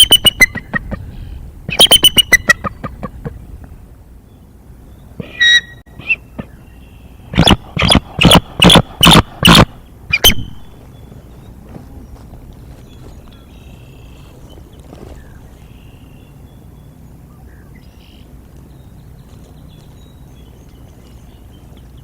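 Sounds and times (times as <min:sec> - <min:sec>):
eagles calling: 0:00.0 - 0:03.5, 0:05.0 - 0:11.4.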